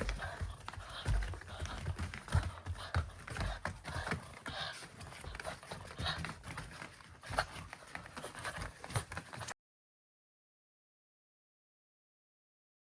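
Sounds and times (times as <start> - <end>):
dog paws on hard floor: 0.0 - 9.6.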